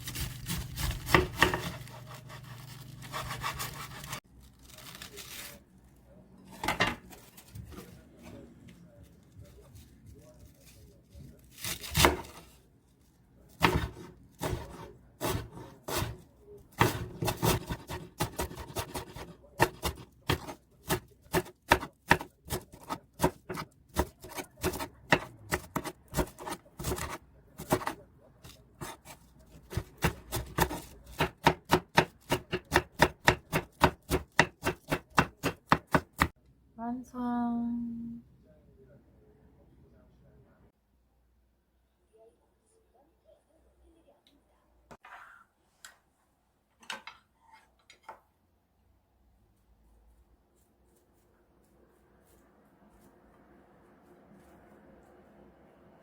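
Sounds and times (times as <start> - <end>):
knife chopping on cutting board: 0.0 - 2.5, 3.1 - 4.2, 11.8 - 12.4, 13.6 - 16.2, 16.8 - 28.0, 28.8 - 36.3.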